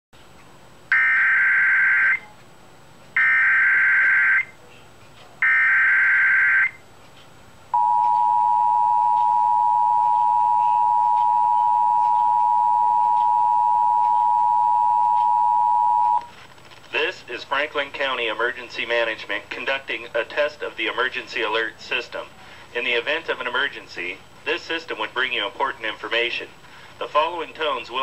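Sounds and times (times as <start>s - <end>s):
two-tone alert signal: 7.8s - 16.3s.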